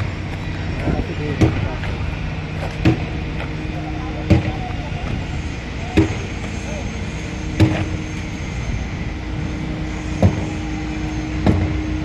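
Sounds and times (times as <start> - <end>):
machinery rumble and hum: 0.0 - 12.0
sharp knocks: 1.4 - 1.7, 2.8 - 3.1, 10.2 - 10.5, 11.4 - 11.8.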